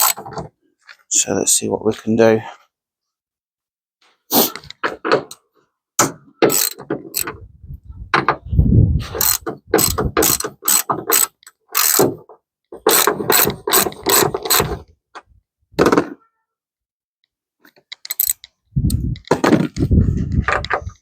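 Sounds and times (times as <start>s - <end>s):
ratchet wrench clicking: 6.5s - 7.4s, 9.2s - 12.1s, 12.9s - 14.7s, 17.9s - 19.0s.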